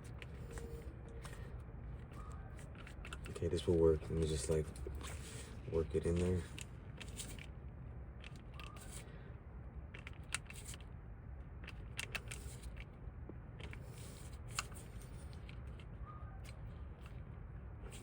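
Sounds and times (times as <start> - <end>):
small metal parts clicking: 0.0 - 3.4
steady low rumble: 0.0 - 18.0.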